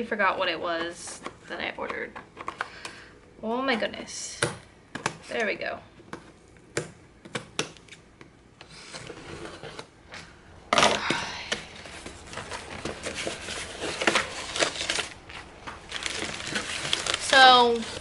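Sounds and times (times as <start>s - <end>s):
box and packing crinkling: 11.9s - 18.0s.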